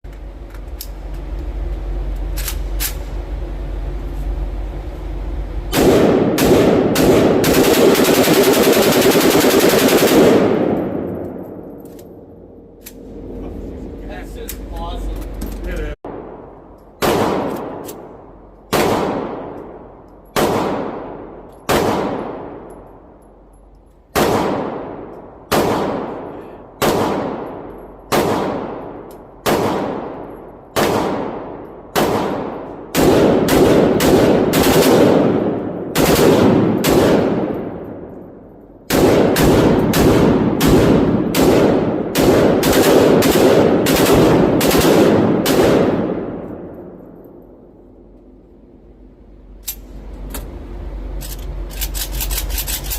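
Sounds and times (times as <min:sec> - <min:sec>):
gunshots with long echo: 0:05.7 - 0:13.3, 0:16.1 - 0:23.1, 0:24.1 - 0:47.7.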